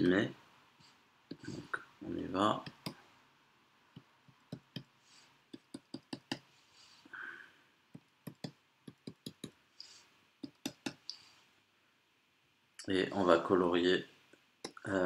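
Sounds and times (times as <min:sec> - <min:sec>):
pen tapping and scratching on paper: 0:02.6 - 0:03.0, 0:04.0 - 0:04.9, 0:05.5 - 0:06.5, 0:07.9 - 0:09.6, 0:10.4 - 0:11.1.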